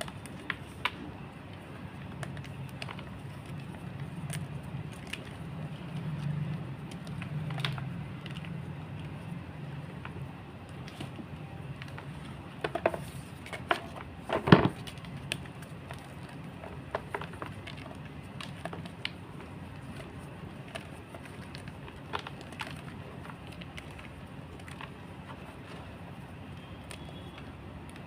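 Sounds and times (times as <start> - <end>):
chalk crunching and snapping: 0.0 - 9.3.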